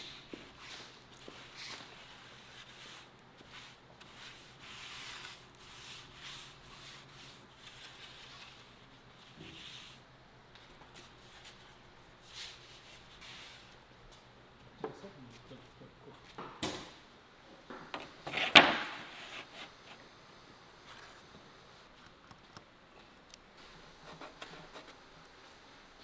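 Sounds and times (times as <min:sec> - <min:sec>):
hand sanding wood: 0:00.3 - 0:10.0.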